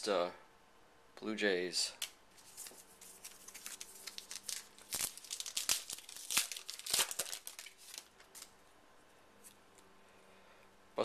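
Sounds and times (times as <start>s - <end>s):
foil wrapper crinkling: 2.4s - 8.6s.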